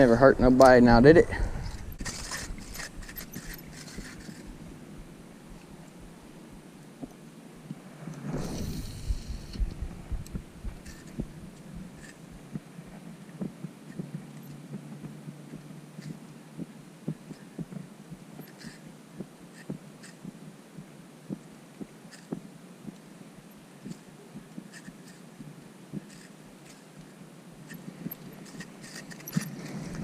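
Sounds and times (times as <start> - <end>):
brief rush of noise: 8.0 - 10.1.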